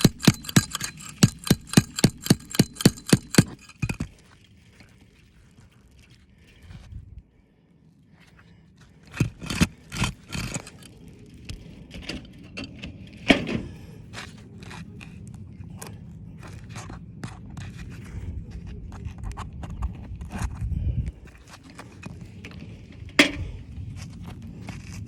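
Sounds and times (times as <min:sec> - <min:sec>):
roof shingle scraping: 0:00.0 - 0:04.2, 0:09.0 - 0:15.3
small clicks and scrapes: 0:00.0 - 0:06.6, 0:08.8 - 0:20.7, 0:21.3 - 0:25.0.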